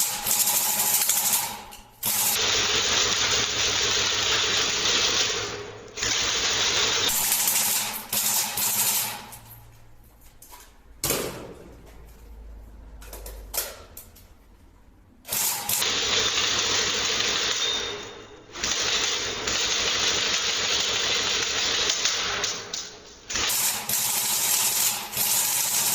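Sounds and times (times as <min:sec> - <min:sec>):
airsoft gun firing bursts: 0:00.0 - 0:09.2, 0:15.3 - 0:17.9, 0:18.5 - 0:25.9.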